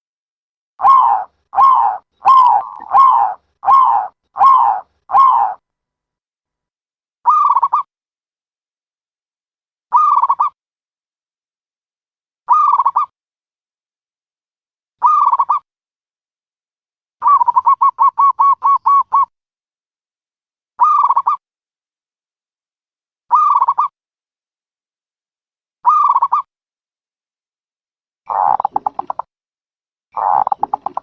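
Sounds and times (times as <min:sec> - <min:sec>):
dove cooing: 0:00.8 - 0:05.6, 0:28.3 - 0:29.2, 0:30.2 - 0:31.0.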